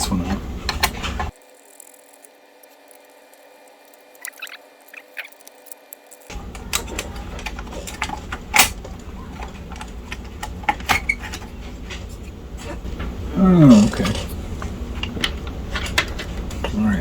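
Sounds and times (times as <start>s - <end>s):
screwdriver scratching a screw: 1.3s - 6.3s
handling noise: 4.2s - 17.0s.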